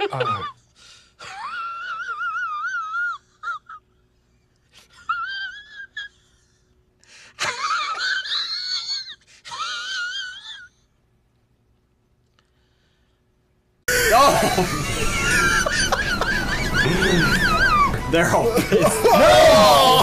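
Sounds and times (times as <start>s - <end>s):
high-pitched wheezing laughter: 4.8s - 6.7s, 7.3s - 10.8s, 13.9s - 19.6s.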